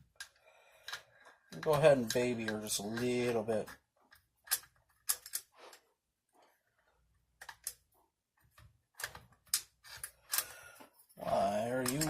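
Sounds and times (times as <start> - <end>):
metal gun parts clicking: 0.1 - 5.8, 8.9 - 10.5, 11.7 - 12.0.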